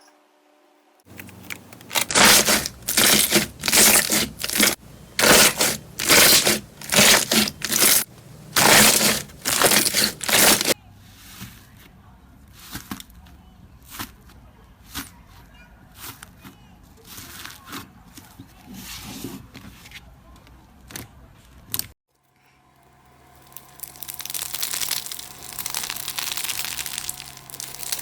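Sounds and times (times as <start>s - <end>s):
crunchy slime squishing: 1.1s - 10.8s, 23.4s - 28.0s.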